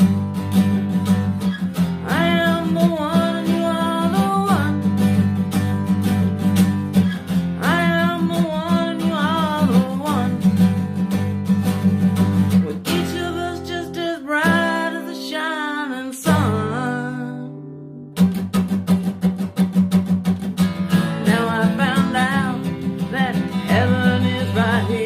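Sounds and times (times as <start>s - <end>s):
acoustic guitar strummed: 0.0s - 25.0s.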